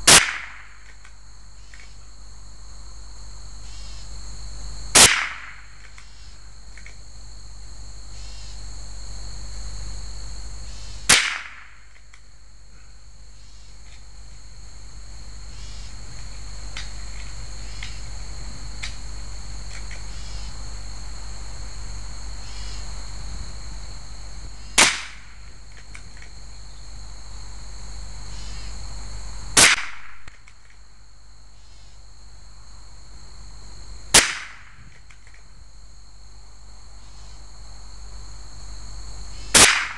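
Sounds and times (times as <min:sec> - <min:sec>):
high insect chirring: 0:00.0 - 0:39.9
rifle shots: 0:05.0 - 0:05.6, 0:11.1 - 0:11.7, 0:24.8 - 0:25.2, 0:34.2 - 0:34.6, 0:39.6 - 0:39.9.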